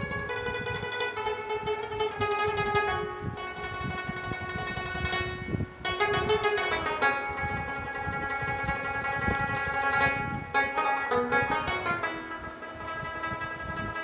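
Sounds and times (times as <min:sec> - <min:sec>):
light percussion: 0:00.0 - 0:14.0
plucked string instrument music: 0:00.0 - 0:14.0.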